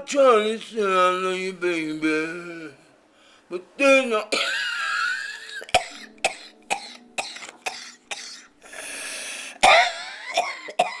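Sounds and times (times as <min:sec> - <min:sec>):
person coughing: 0:04.3 - 0:08.5, 0:09.6 - 0:11.0.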